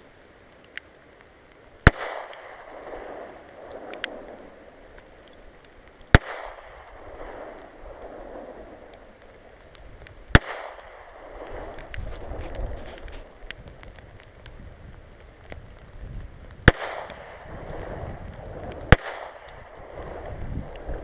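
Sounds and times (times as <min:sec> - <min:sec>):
gunshot echo rolling: 0:01.8 - 0:05.3, 0:06.1 - 0:09.1, 0:10.3 - 0:13.0, 0:16.6 - 0:18.0, 0:18.8 - 0:20.3.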